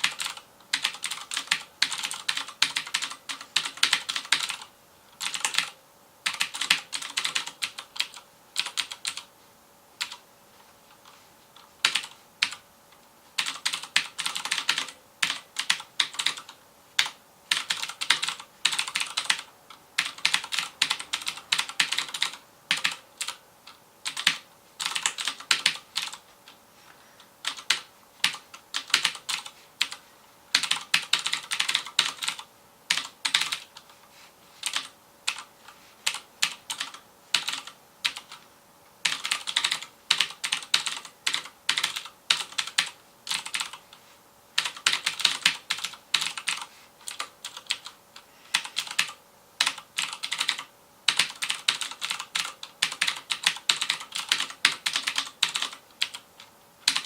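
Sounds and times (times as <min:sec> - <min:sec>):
mechanical keyboard typing: 0:00.0 - 0:09.3, 0:10.0 - 0:10.2, 0:11.0 - 0:12.6, 0:13.4 - 0:26.2, 0:27.4 - 0:33.9, 0:34.6 - 0:38.4, 0:39.0 - 0:43.9, 0:44.6 - 0:57.0.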